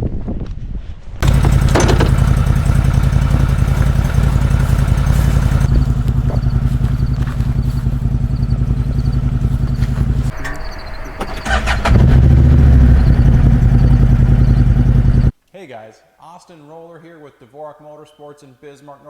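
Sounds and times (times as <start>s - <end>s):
low thumps: 1.2s - 15.3s
small vehicle engine running: 1.2s - 15.3s.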